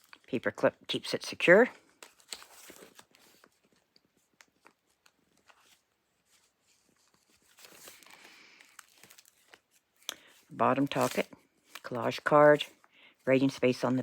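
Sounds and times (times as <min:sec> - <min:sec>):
page turning rustle: 0:01.9 - 0:12.8.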